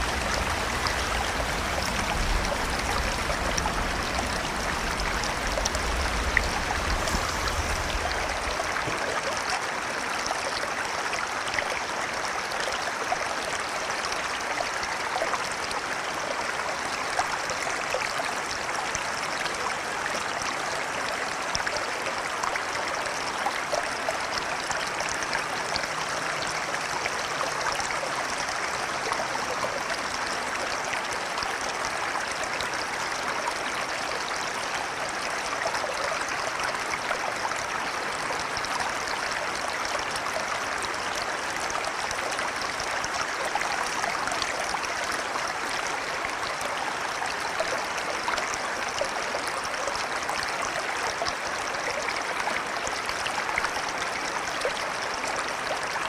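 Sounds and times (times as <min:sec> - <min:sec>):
river water rushing: 0:00.0 - 0:56.0.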